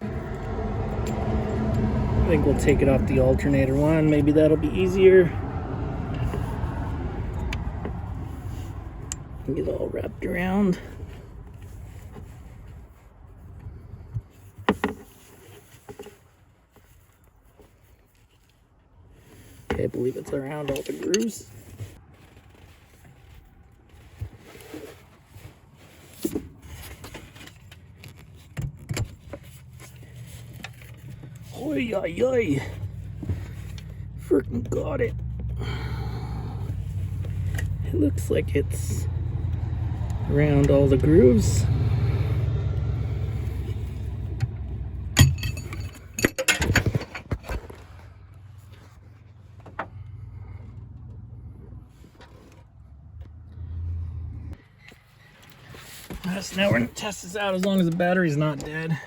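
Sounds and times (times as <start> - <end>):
low steady rumble: 0.0 - 15.2, 28.0 - 54.6
metal hand tools clinking: 45.2 - 46.8
metal clunks and knocks: 45.2 - 47.5.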